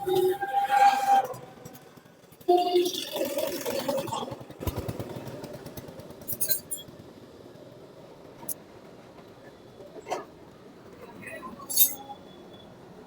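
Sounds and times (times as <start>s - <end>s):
small metal parts clinking: 6.3s - 6.8s, 11.6s - 12.1s.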